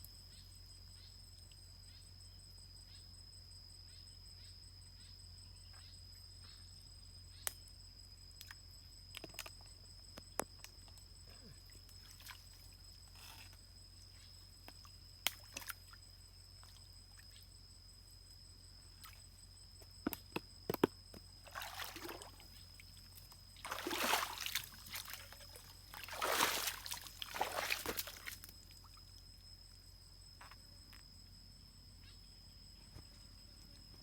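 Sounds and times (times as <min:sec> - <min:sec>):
water splashing and sloshing: 0:21.4 - 0:29.0.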